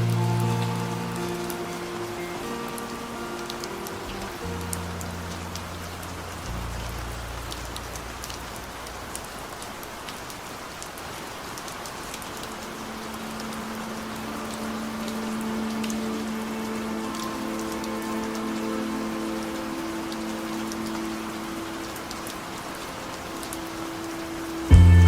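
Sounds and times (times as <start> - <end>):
steady synth-like note: 0.0 - 8.8
held low music note: 0.0 - 9.1, 24.7 - 25.0
steady rain falling: 0.0 - 25.0.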